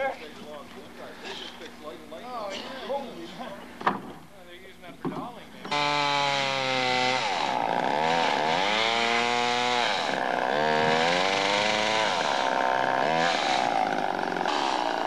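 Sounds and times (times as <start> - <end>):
chainsaw engine revving: 5.7 - 15.0.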